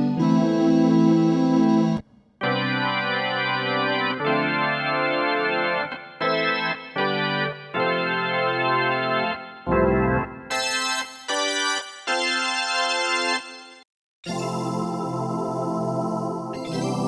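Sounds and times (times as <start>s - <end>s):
synthesizer organ chords: 0.0s - 17.0s.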